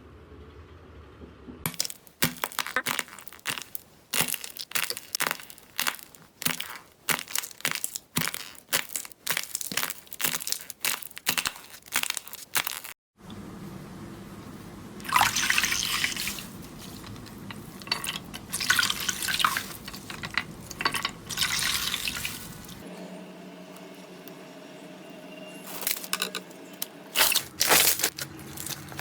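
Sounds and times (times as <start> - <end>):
crunchy material crushed by hand: 1.7 - 13.0, 27.2 - 29.0.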